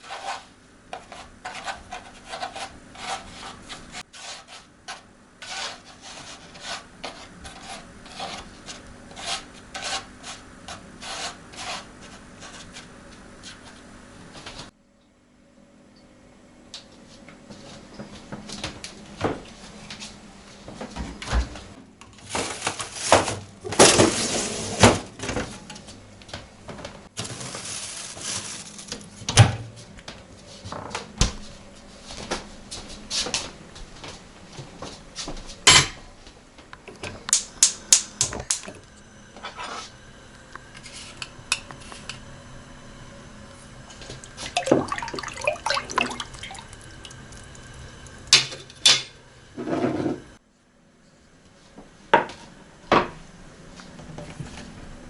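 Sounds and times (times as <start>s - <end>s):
rushing water: 44.4s - 47.2s.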